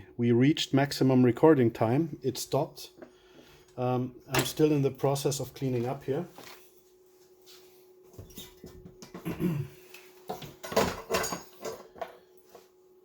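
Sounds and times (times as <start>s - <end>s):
faint steady hum: 0.0s - 13.0s
objects clattering on workbench: 8.1s - 12.7s.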